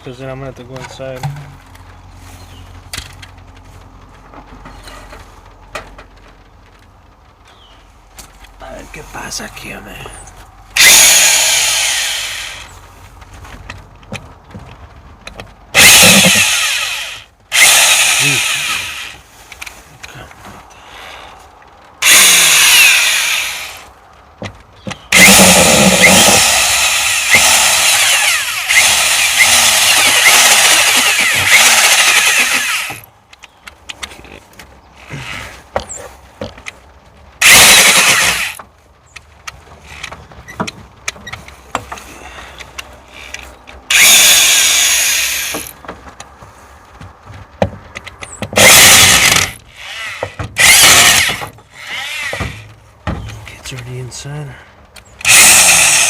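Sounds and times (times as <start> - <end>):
electric drill drilling: 10.8 - 12.7, 15.8 - 19.2, 22.0 - 23.8, 25.1 - 33.0, 37.4 - 38.6, 43.1 - 45.7, 48.6 - 52.6, 55.2 - 56.0
clicks and handling noise: 18.4 - 22.3, 27.3 - 44.1, 45.5 - 54.0.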